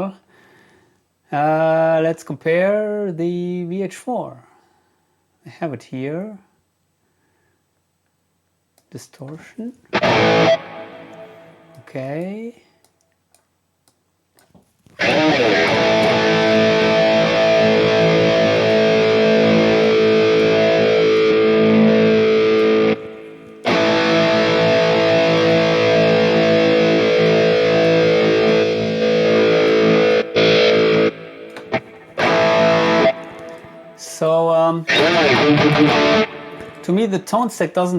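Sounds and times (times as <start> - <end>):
distorted electric guitar chord: 9.9 - 11.8, 15.0 - 34.1, 34.8 - 36.9.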